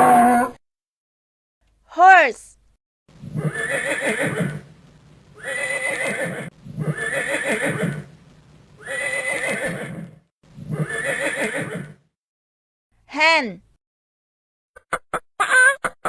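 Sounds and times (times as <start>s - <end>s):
horse neighing: 0.0s - 0.6s, 3.3s - 4.6s, 5.4s - 8.1s, 8.8s - 12.0s.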